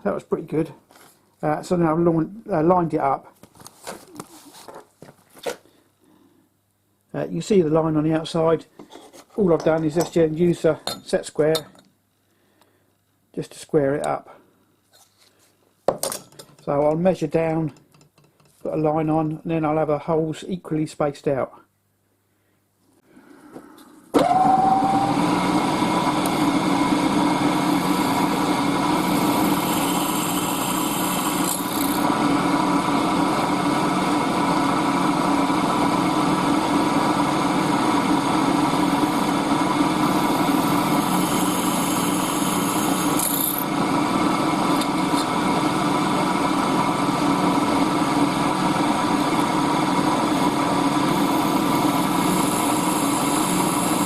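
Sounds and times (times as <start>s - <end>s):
power tool motor running: 24.2s - 54.0s.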